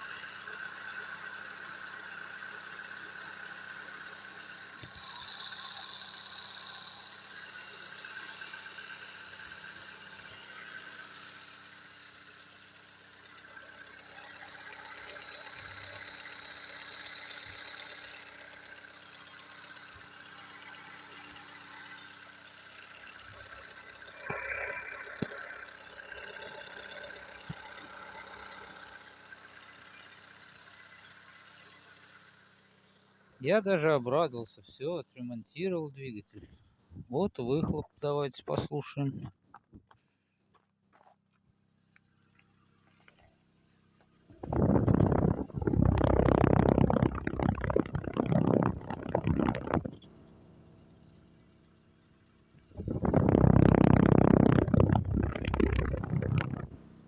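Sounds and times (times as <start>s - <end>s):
car engine idling: 0.0s - 35.2s.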